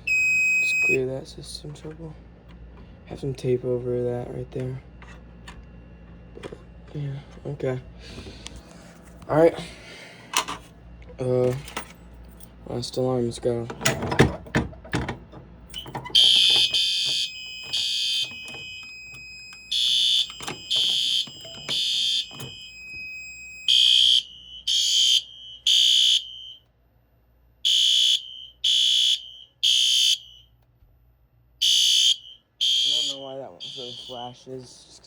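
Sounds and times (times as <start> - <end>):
fire alarm horn blasts: 0.0 - 1.1, 15.8 - 26.7, 27.6 - 30.6, 31.6 - 34.5
thin steady high tone: 32.1 - 34.5.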